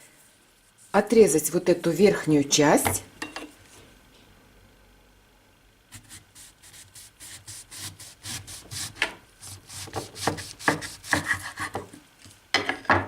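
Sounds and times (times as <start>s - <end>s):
knife sawing through radish: 5.9s - 11.8s.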